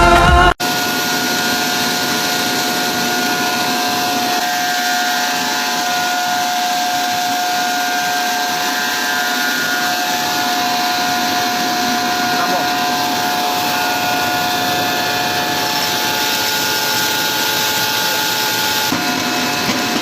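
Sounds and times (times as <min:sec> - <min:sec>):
machine running with whine: 0:00.0 - 0:20.0.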